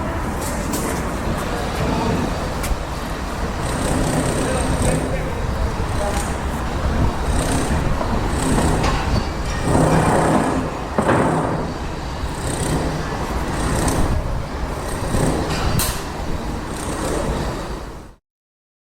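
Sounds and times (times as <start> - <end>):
heavy machinery engines running: 0.0 - 18.2
sharp knocks: 7.3 - 14.2.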